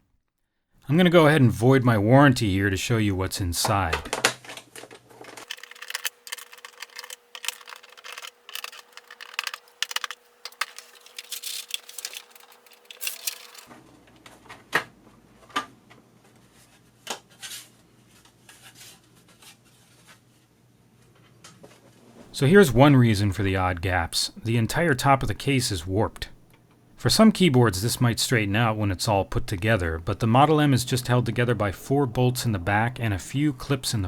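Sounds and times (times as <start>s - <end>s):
plastic keyboard case clicks and scrapes: 5.4s - 13.7s.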